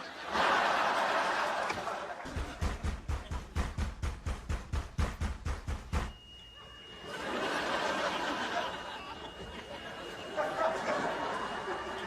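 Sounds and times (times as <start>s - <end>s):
studio audience laughter: 0.0s - 3.4s, 6.6s - 12.0s
fast thuds: 2.3s - 6.2s.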